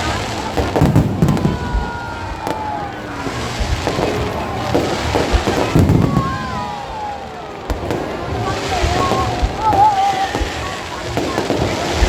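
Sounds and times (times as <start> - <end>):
fireworks bangs and crackling: 0.0 - 12.0.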